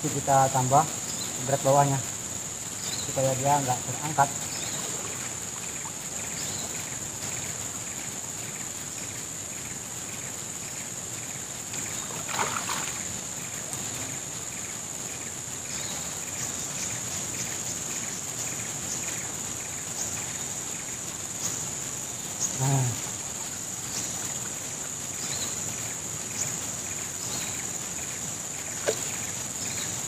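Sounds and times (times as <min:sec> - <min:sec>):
splash: 0:12.0 - 0:14.2
river water rushing: 0:12.0 - 0:14.3.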